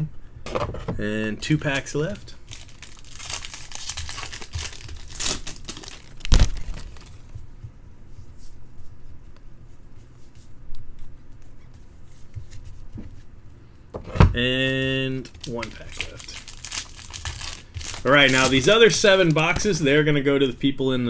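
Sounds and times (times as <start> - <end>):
foil wrapper tearing and crinkling: 2.4 - 7.2, 15.2 - 19.7
cards rustling and clicking: 15.2 - 19.8.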